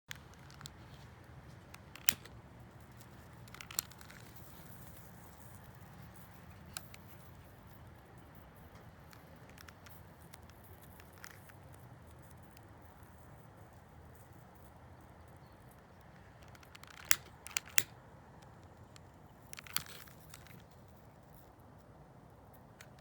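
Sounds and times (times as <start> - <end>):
fire crackling and popping: 15.8 - 21.9.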